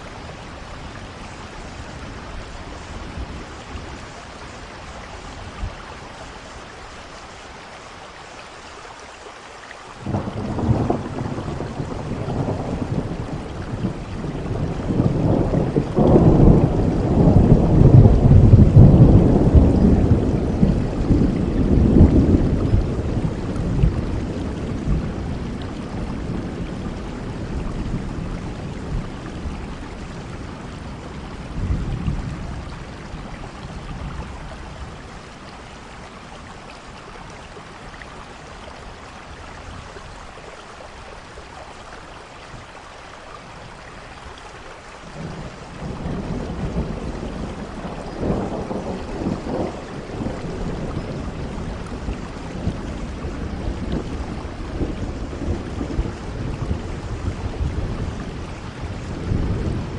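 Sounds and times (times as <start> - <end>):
steady rain: 0.0 - 59.9
thunder rumbling: 10.0 - 35.4, 45.1 - 59.9.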